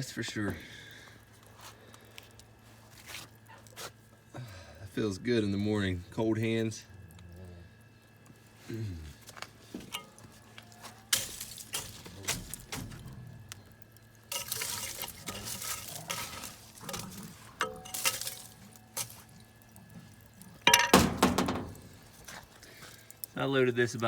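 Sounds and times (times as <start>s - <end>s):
metallic clinks and clanks: 14.3s - 19.1s
rustling: 14.3s - 20.6s.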